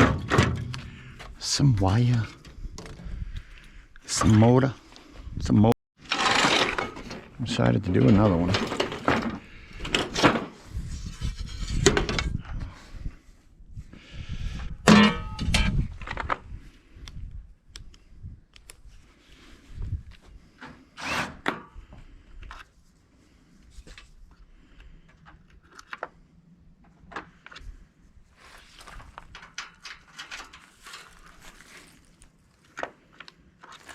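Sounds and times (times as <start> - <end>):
metal parts knocking and clanking: 0.0 - 1.0, 6.0 - 10.6, 29.2 - 31.4
loud ringing metal clang: 14.9 - 15.4.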